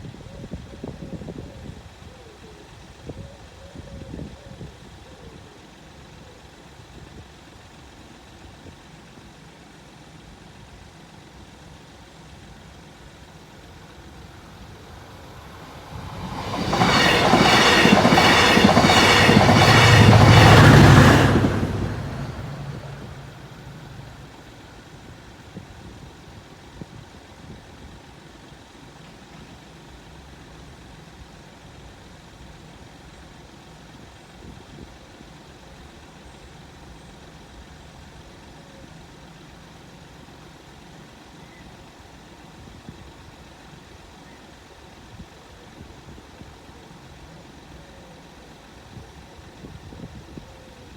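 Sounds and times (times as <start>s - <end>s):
train wheels clicking over rail joints: 13.7s - 24.3s.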